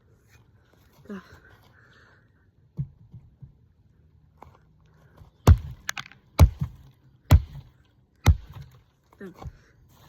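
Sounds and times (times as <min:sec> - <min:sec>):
axe chopping into wood: 0:05.4 - 0:08.8.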